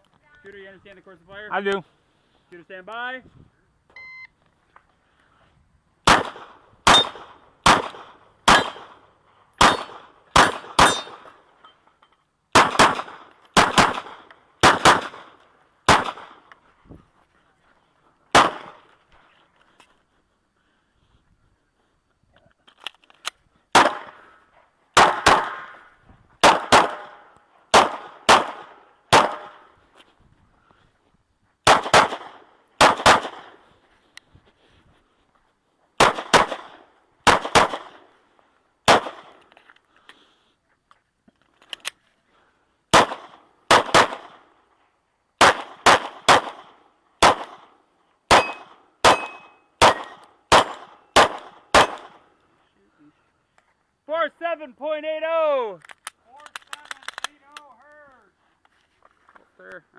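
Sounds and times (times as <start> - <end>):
pistol shots: 6.0 - 9.0, 9.6 - 11.4, 12.5 - 16.4, 18.3 - 18.8, 23.7 - 24.2, 25.0 - 25.8, 26.4 - 29.7, 31.6 - 33.6, 36.0 - 38.0, 38.8 - 39.4, 42.9 - 44.4, 45.4 - 47.7, 48.3 - 52.2.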